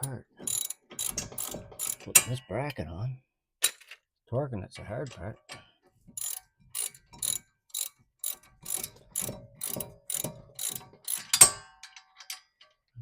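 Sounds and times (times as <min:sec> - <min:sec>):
ratchet wrench clicking: 0:00.0 - 0:02.2, 0:06.2 - 0:12.4.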